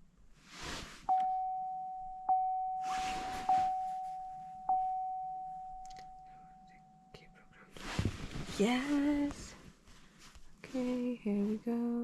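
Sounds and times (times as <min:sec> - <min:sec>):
car warning chime dinging: 0:01.1 - 0:07.4.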